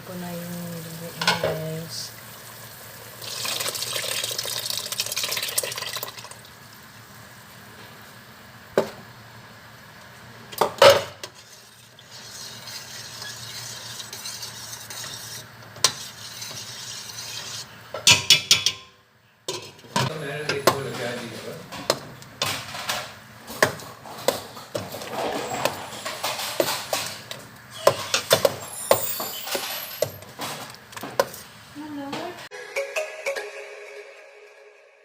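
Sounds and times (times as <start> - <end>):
stew sizzling in a pot: 0.0 - 18.0.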